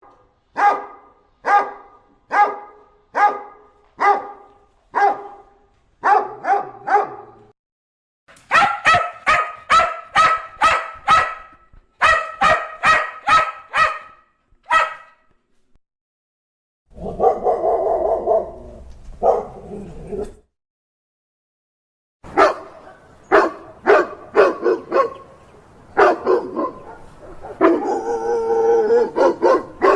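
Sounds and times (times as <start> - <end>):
dog barking: 0.0 - 7.5, 8.5 - 15.2, 17.0 - 18.6, 19.2 - 19.7, 22.3 - 25.3, 26.0 - 28.2, 28.9 - 29.9.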